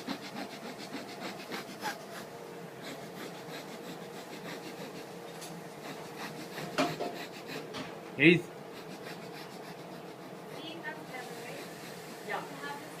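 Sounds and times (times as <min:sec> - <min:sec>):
rubbing and scratching: 0:00.0 - 0:02.3
sniffling: 0:00.0 - 0:07.8, 0:08.7 - 0:12.5.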